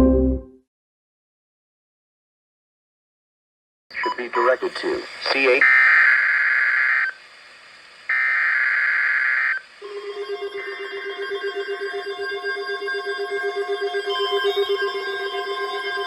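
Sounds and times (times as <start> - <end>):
pulsing electronic attention tone: 9.8 - 16.0.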